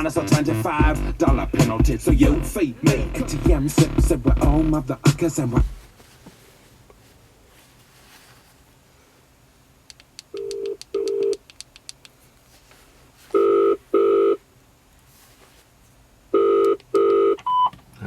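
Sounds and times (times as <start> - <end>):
telephone ringing tone: 13.3 - 14.4, 16.3 - 17.7.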